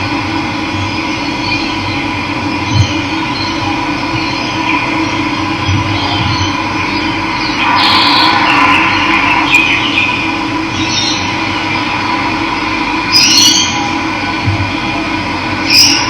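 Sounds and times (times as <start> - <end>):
birds chirping: 4.2 - 12.3.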